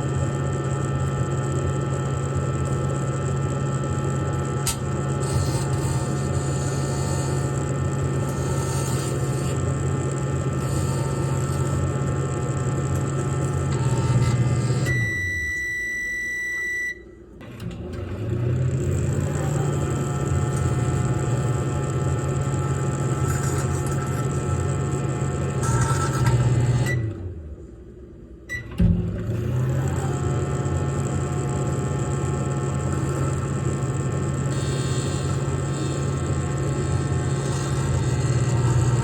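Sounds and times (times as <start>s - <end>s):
microwave oven humming: 0.0s - 39.0s
long high beep: 14.9s - 17.1s.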